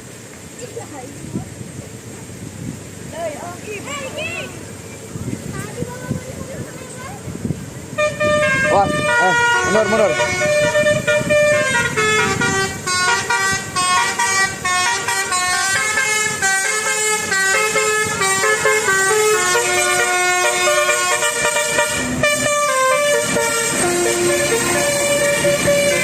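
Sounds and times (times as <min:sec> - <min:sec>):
musical air horn melody: 0:08.0 - 0:26.0.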